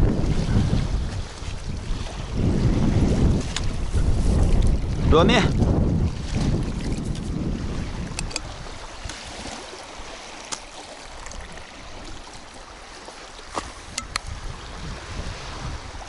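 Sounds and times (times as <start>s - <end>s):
water lapping at shore: 0.0s - 16.0s
wind rumbling on microphone: 0.0s - 16.0s.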